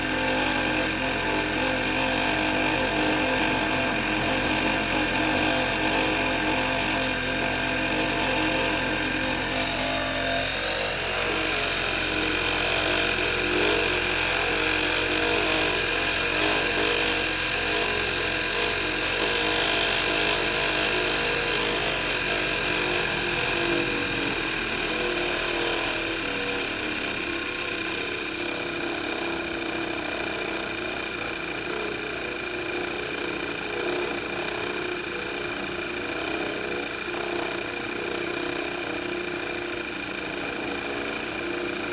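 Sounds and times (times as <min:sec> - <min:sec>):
alternator buzzing: 0:00.0 - 0:28.4.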